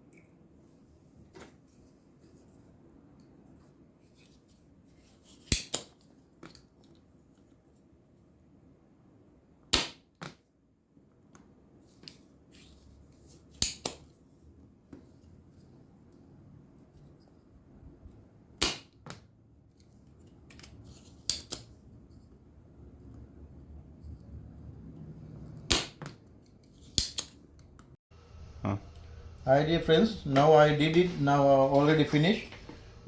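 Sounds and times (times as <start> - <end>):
faint steady hum: 28.2 - 33.0.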